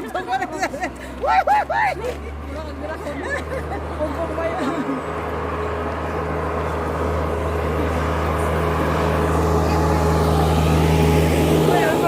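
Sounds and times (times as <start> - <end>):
vehicle engine low drone: 0.0 - 12.0.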